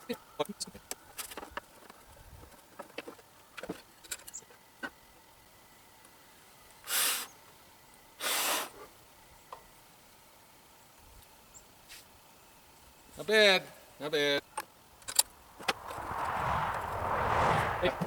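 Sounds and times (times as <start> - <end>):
short hissing bursts: 6.9 - 7.4, 8.2 - 8.8.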